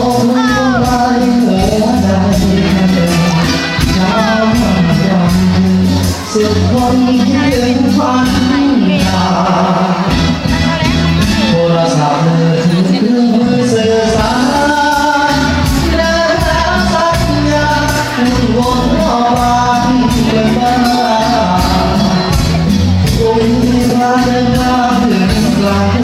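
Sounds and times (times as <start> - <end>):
live band music with singer: 0.0 - 26.0
strong bass line: 0.0 - 26.0.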